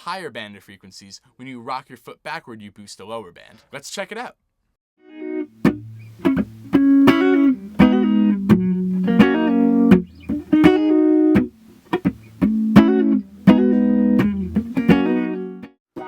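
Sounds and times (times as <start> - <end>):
electric guitar with wah pedal: 5.0 - 15.7.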